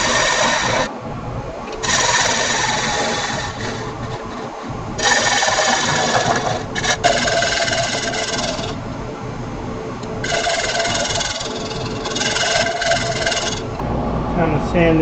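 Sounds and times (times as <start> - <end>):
tool rasping on spinning wood: 0.0 - 0.9, 1.7 - 8.9, 10.1 - 13.8
wood lathe running: 0.0 - 13.9.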